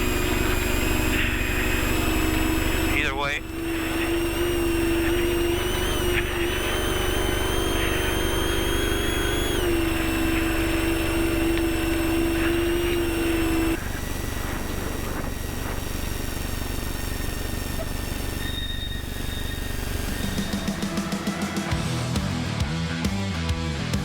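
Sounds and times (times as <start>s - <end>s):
truck engine rumble: 0.0s - 18.4s
strong steady drone: 0.0s - 22.9s.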